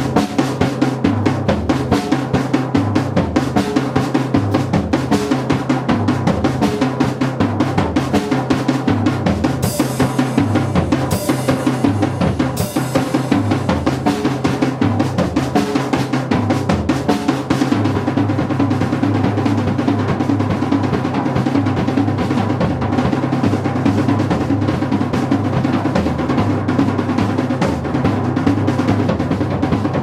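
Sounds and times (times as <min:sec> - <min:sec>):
fast drum solo: 0:00.0 - 0:30.0
cymbal crash: 0:09.6 - 0:14.5.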